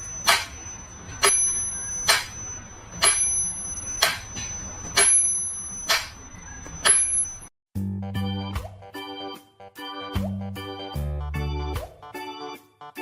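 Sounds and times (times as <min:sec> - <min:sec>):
small metal bell ringing: 0:00.0 - 0:07.5.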